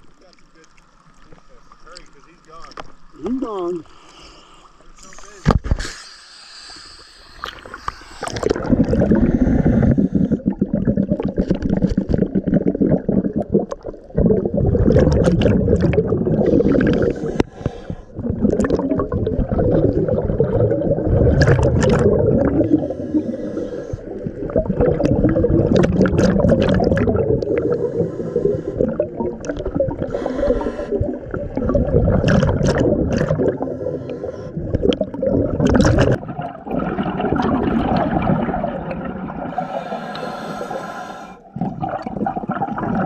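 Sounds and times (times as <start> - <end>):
diver breathing through regulator: 3.8 - 4.9, 5.7 - 10.6, 16.3 - 18.4, 22.3 - 24.5, 27.2 - 31.4, 33.2 - 35.0, 39.4 - 41.6
exhaled bubbles gurgling: 7.3 - 43.0.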